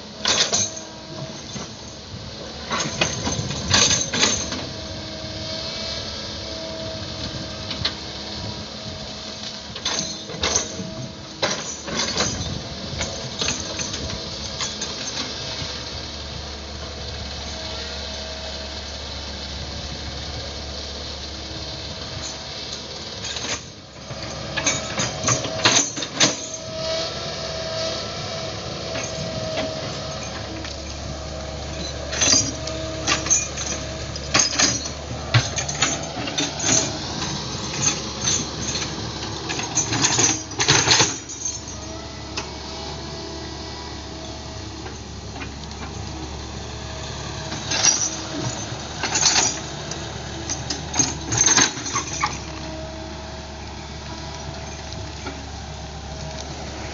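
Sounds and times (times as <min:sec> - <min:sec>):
excavator diesel engine running: 0:00.0 - 0:56.9.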